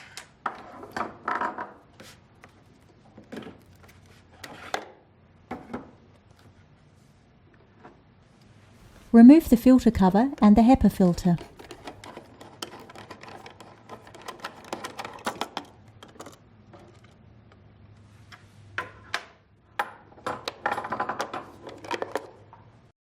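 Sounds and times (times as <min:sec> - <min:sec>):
plastic parts clicking and knocking: 0:11.3 - 0:17.2, 0:18.8 - 0:22.6.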